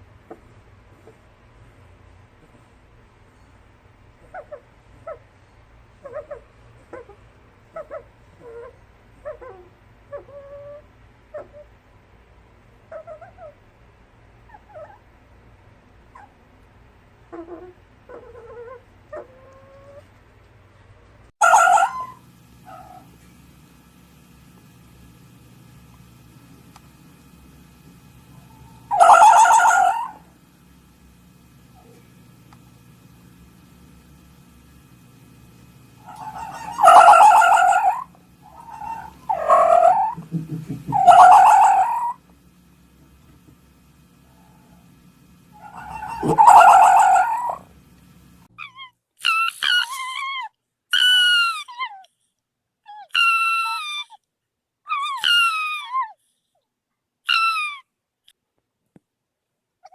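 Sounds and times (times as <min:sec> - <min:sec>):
fox yipping calls: 0:21.4 - 0:23.0, 0:28.6 - 0:30.2, 0:36.1 - 0:40.2, 0:40.9 - 0:42.2, 0:45.6 - 0:47.7, 0:48.6 - 0:52.1, 0:52.9 - 0:54.2, 0:54.9 - 0:56.2, 0:57.2 - 0:57.9
fox harsh call: 0:28.8 - 0:30.2, 0:36.1 - 0:40.2, 0:40.9 - 0:42.2, 0:45.6 - 0:47.7.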